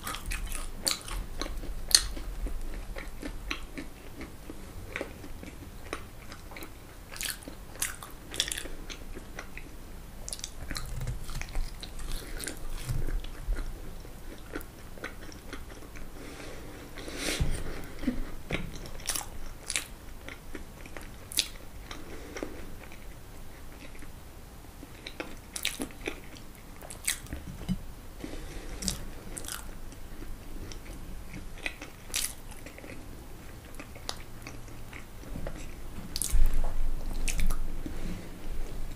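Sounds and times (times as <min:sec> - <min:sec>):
crunching crisp food: 0:00.0 - 0:04.3, 0:04.9 - 0:09.6, 0:10.3 - 0:16.0, 0:18.8 - 0:23.1, 0:24.9 - 0:27.3, 0:28.8 - 0:29.8, 0:30.8 - 0:36.4
wet chewing: 0:00.0 - 0:09.7, 0:10.3 - 0:16.1, 0:17.9 - 0:23.1, 0:28.8 - 0:29.7, 0:30.7 - 0:36.4.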